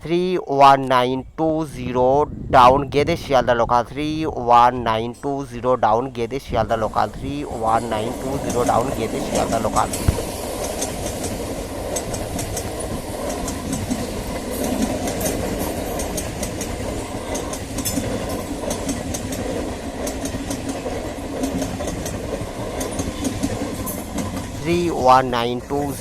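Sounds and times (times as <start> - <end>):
train wheels rumbling on rail: 6.5 - 26.0
sharp clicks from wheels: 9.9 - 24.6.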